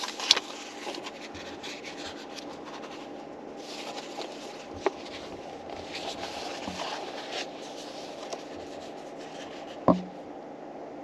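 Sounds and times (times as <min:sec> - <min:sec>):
book pages rustling: 0:00.0 - 0:10.0
sharp knock: 0:09.9 - 0:10.1.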